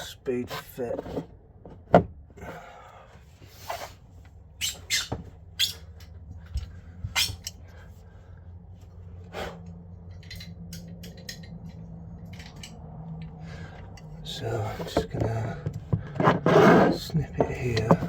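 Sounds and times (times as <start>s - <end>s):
steady low hum: 0.0s - 18.0s
tools and plastic pipes clicking: 9.6s - 14.2s.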